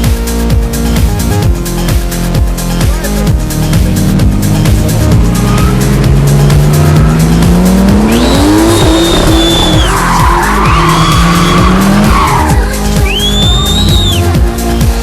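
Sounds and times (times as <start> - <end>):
electronic dance music: 0.2 - 15.0
low tone gliding upward: 3.4 - 14.2
high held tones rising and falling: 4.9 - 14.2.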